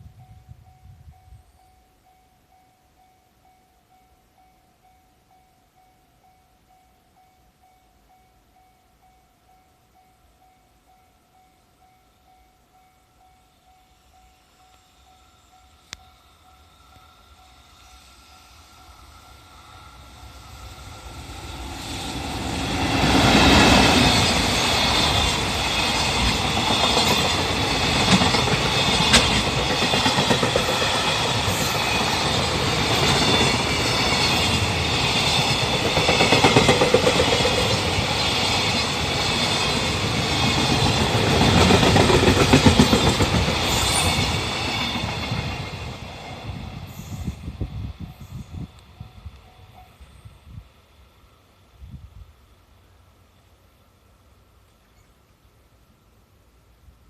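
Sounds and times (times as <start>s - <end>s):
freight train rumble: 11.4s - 53.2s
wheels clacking over rail joints: 21.2s - 46.5s.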